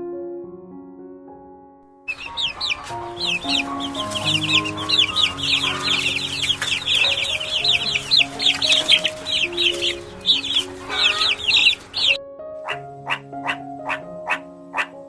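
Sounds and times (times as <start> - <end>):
background music: 0.8 - 15.0
short evenly spaced calls: 2.1 - 12.2
baby chicks cheeping: 2.1 - 14.9.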